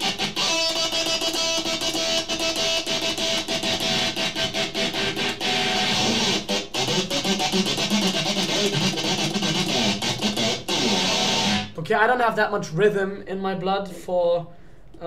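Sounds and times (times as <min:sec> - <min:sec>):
stuttering distorted electric guitar: 0:00.0 - 0:11.8.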